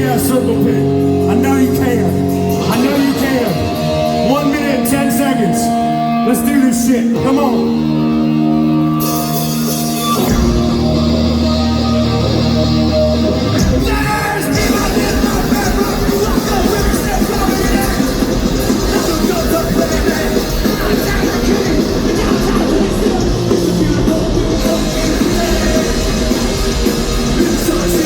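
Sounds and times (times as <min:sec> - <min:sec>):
drums crashing: 0:10.2 - 0:11.6, 0:13.4 - 0:28.0
bass guitar note: 0:10.2 - 0:28.0.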